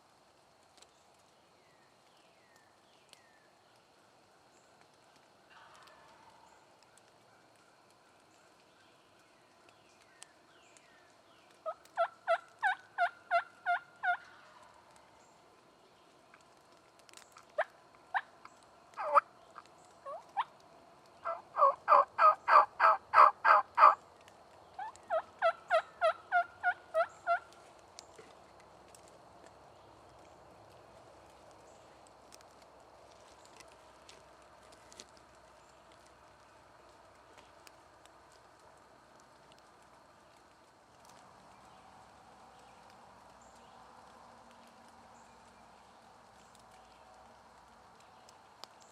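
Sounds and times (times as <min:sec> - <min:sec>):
turkey clucks: 0:11.6 - 0:14.7, 0:19.0 - 0:20.5, 0:21.2 - 0:24.0, 0:24.8 - 0:27.5
wild turkey yelping: 0:11.6 - 0:14.7, 0:17.5 - 0:20.6, 0:21.2 - 0:24.0, 0:24.7 - 0:27.6.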